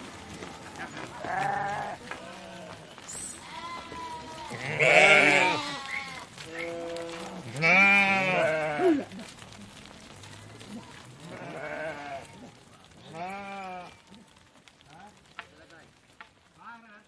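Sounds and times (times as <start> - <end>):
sheep bleating: 1.1 - 9.1, 11.0 - 12.4, 13.1 - 14.1.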